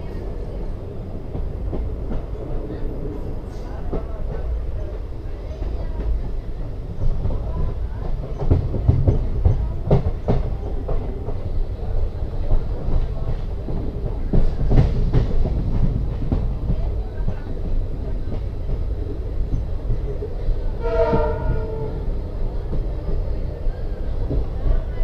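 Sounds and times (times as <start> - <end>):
train rumbling on track: 0.0 - 25.0
locomotive horn blast: 20.8 - 22.1.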